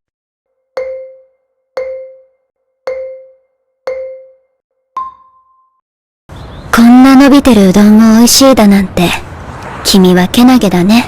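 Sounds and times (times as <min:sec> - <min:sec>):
low countdown pings: 0:00.5 - 0:05.8
higher final ping: 0:00.6 - 0:05.8.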